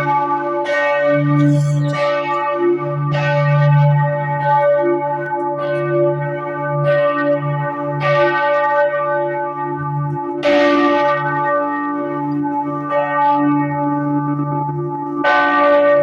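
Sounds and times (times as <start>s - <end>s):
deep bell hum: 0.0s - 10.2s
church bell strikes: 0.0s - 16.0s.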